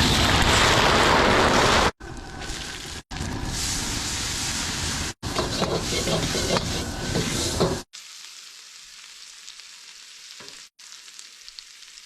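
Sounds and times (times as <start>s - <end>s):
food frying in a pan: 0.1s - 12.0s
sizzling hiss with crackles: 2.5s - 12.0s.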